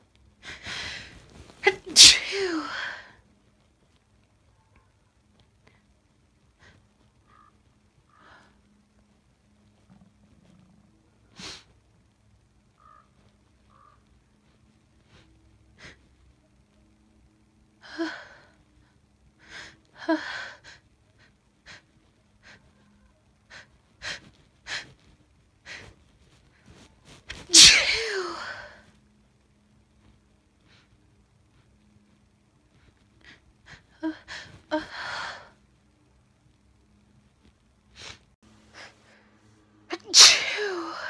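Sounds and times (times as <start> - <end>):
woman sneezing: 1.6 - 2.9, 27.4 - 28.7, 40.0 - 41.0
woman sniffing and gasping: 38.0 - 39.0.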